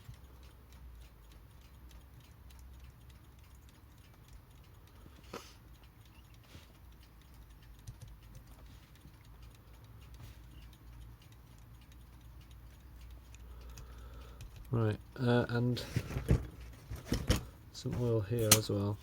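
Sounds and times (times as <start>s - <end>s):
alarm clock ticking: 0.0s - 19.0s
sharp click: 18.4s - 18.8s.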